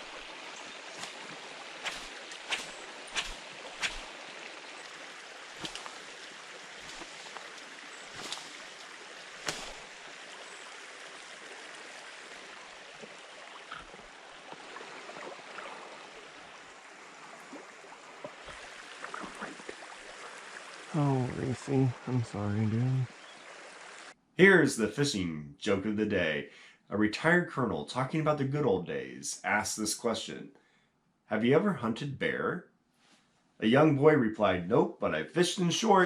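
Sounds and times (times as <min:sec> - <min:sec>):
creek water running: 0:00.0 - 0:24.2.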